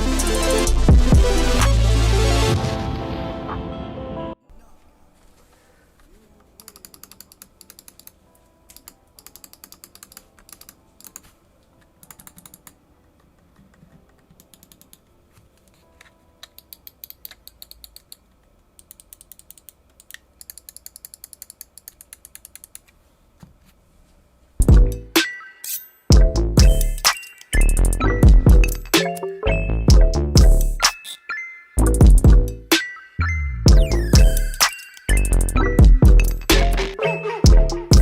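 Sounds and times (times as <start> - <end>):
mouse clicking rapidly: 6.6 - 11.3, 12.0 - 15.8, 16.4 - 23.0.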